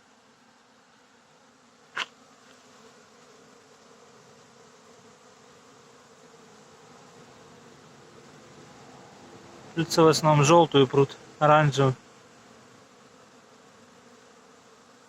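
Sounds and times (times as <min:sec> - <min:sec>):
honeybees humming: 0:00.0 - 0:15.0.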